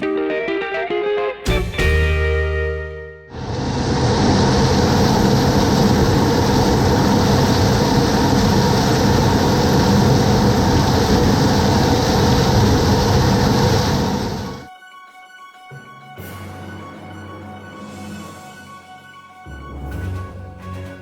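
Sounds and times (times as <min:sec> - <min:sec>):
heavy farm machinery engine drone: 0:03.4 - 0:14.7.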